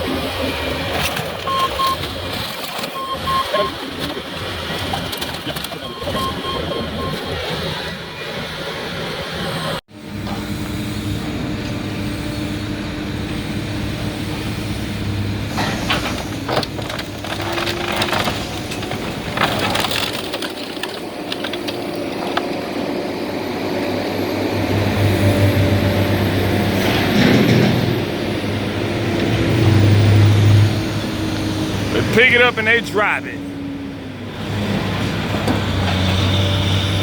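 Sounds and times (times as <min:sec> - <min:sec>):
diesel engine running: 0:00.0 - 0:37.0
wood and debris crunching: 0:15.6 - 0:22.9.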